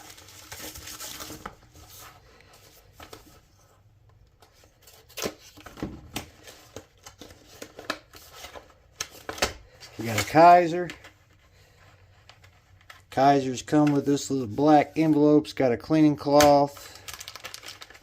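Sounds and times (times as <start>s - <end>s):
package rustling and tearing: 0.0s - 2.1s, 16.8s - 18.0s.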